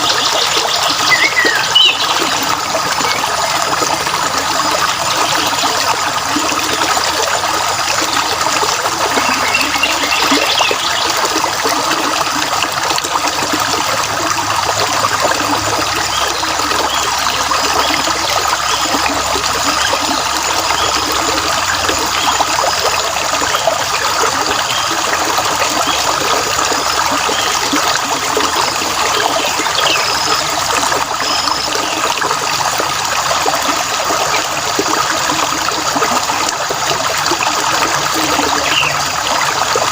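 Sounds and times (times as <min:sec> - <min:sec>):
stream water trickling: 0:00.0 - 0:39.9
bird chirps: 0:00.9 - 0:02.4, 0:38.6 - 0:39.0.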